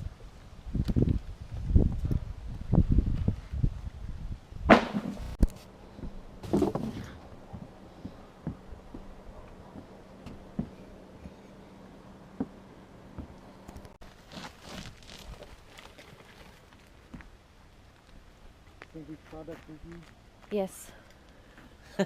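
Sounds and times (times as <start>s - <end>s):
sharp knock: 4.7s - 5.4s
low steady hum: 5.1s - 14.2s.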